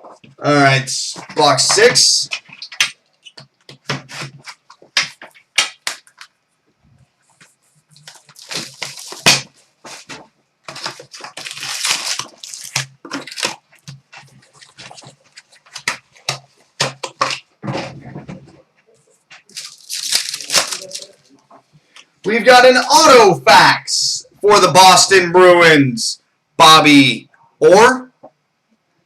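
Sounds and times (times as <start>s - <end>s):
clicks and rustles: 1.0s - 22.2s
foil wrappers crinkling and ripping: 7.9s - 17.4s, 19.3s - 21.3s.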